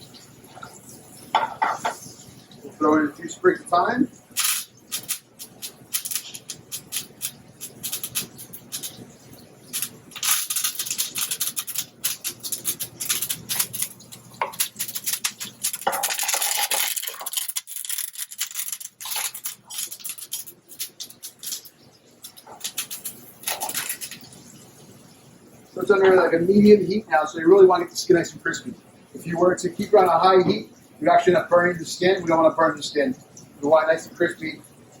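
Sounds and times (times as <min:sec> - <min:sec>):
fish sizzling in hot oil: 0:03.8 - 0:25.4.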